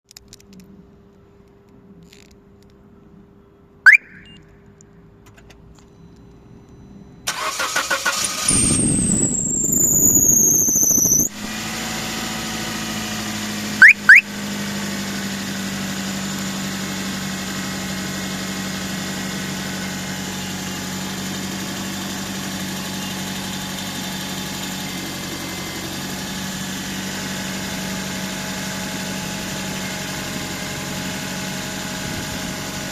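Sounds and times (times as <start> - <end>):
high-pitched whistle: 3.9 - 4.4, 8.6 - 11.4, 13.8 - 14.3
car engine cranking and idling: 7.2 - 32.9.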